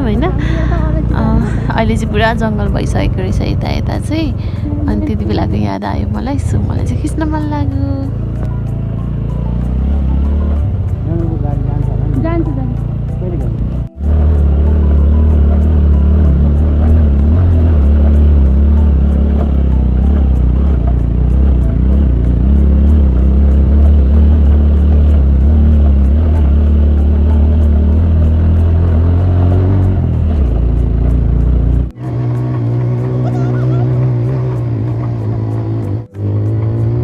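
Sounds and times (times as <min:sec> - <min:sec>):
vehicle engine droning: 0:00.0 - 0:37.0.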